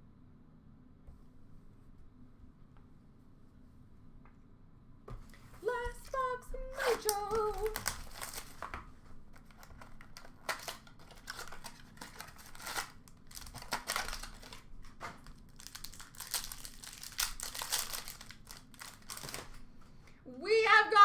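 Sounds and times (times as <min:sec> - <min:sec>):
plastic wrapping ripping and crinkling: 0:05.6 - 0:08.8, 0:09.4 - 0:19.7.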